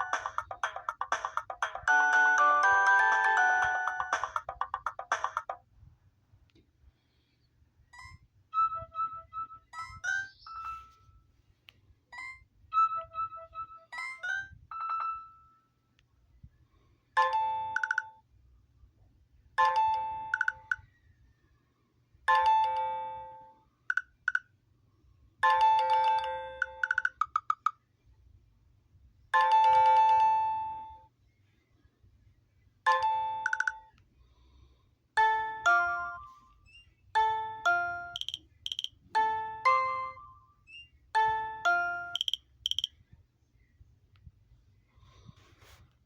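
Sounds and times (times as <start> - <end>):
bell-like phone ringing tone: 0.0 - 5.6
high tinkly phone melody: 0.0 - 5.6, 8.0 - 11.2, 12.2 - 15.7, 25.4 - 27.2, 35.2 - 42.9.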